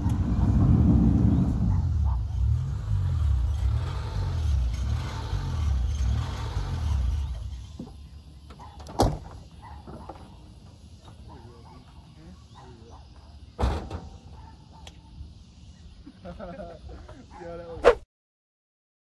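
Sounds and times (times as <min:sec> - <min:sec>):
truck engine rumbling: 0:00.0 - 0:11.4.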